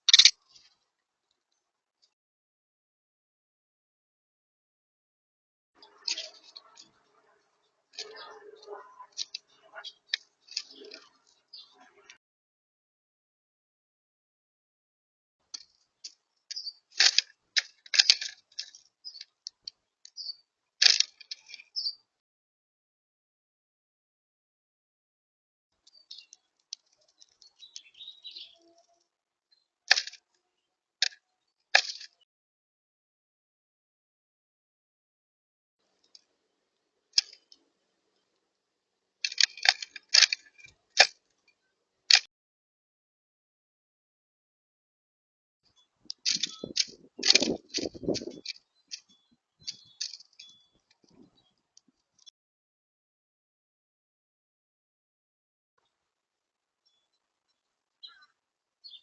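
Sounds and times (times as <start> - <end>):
birds pecking on a bird feeder: 0.0 - 2.1, 5.8 - 12.2, 15.4 - 22.1, 25.8 - 32.2, 35.8 - 42.3, 45.7 - 52.3.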